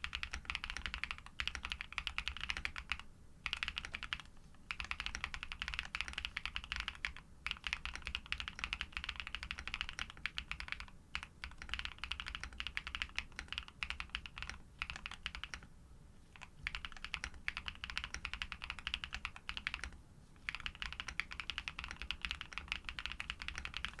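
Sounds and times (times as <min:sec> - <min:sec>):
fast typing on mechanical keyboard: 0:00.0 - 0:15.7, 0:16.4 - 0:24.0.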